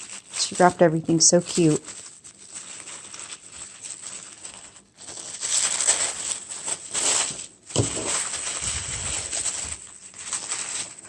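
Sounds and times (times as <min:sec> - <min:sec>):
wrapping paper rustling: 0:00.0 - 0:11.0.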